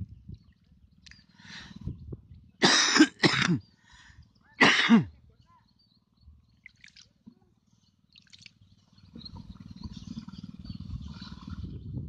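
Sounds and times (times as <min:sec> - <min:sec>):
man coughing: 0:02.6 - 0:03.6, 0:04.6 - 0:05.1.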